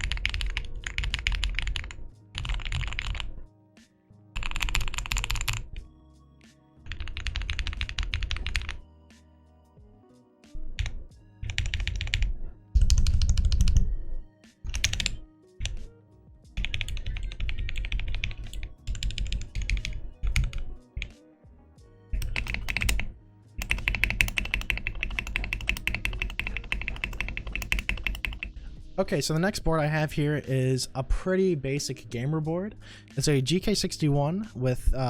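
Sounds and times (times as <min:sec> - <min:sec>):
fast typing on mechanical keyboard: 0:00.0 - 0:03.3, 0:04.4 - 0:05.8, 0:06.9 - 0:08.8, 0:10.8 - 0:13.9, 0:14.7 - 0:15.8, 0:16.6 - 0:21.1, 0:22.2 - 0:28.6.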